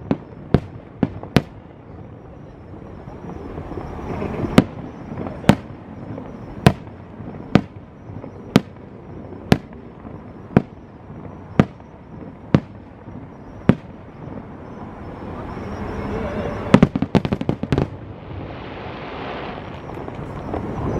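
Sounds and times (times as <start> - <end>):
fireworks bangs: 0.0 - 20.9
noisy background: 0.0 - 20.9.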